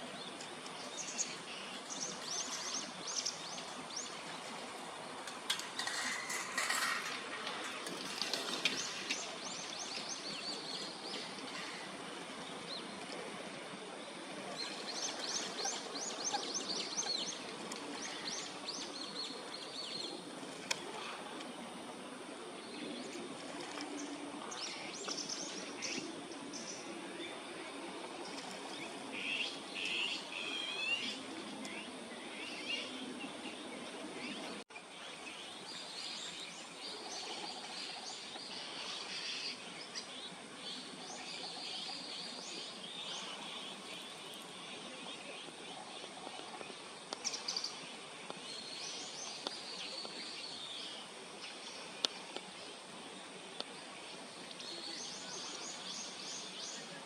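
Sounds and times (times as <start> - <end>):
steady background hiss: 0.0 - 57.0
small birds chirping: 28.3 - 52.9.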